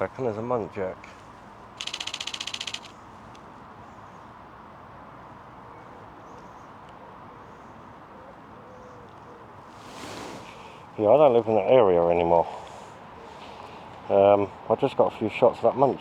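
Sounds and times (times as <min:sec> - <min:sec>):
outdoor background hiss: 0:00.0 - 0:16.0
camera shutter clicks burst: 0:01.8 - 0:03.0.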